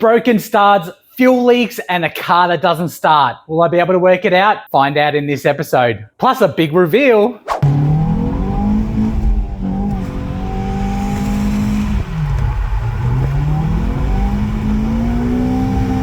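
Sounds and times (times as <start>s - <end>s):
car engine revving: 7.6s - 16.0s.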